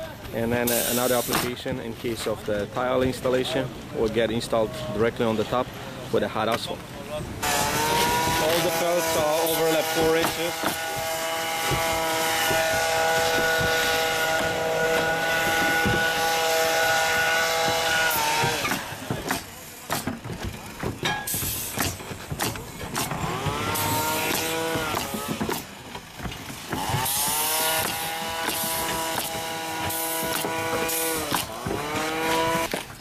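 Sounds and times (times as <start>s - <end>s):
motor whining: 7.4s - 19.1s, 22.6s - 33.0s
sharp knocks: 10.2s - 32.9s.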